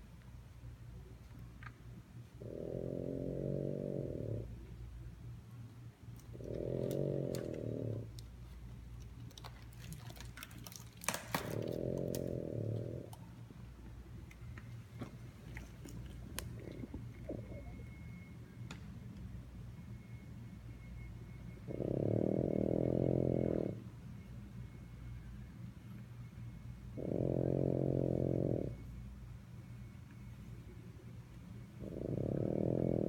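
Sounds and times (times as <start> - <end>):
dog snoring: 2.4 - 4.6, 6.3 - 8.1, 11.5 - 13.2, 16.5 - 18.0, 21.5 - 23.8, 26.9 - 28.9, 31.7 - 33.0.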